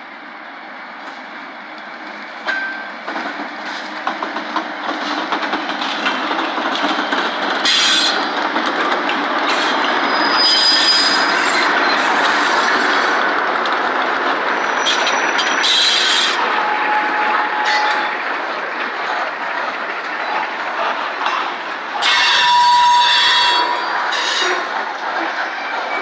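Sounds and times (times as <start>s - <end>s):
train wheels clattering on rails: 2.0s - 26.0s
high wheel squeals: 9.5s - 13.1s, 22.0s - 24.7s.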